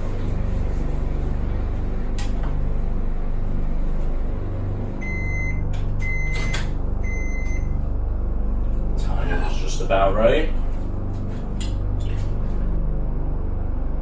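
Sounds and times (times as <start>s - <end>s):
microwave hum: 0.0s - 14.0s
microwave oven beeping: 4.0s - 8.2s.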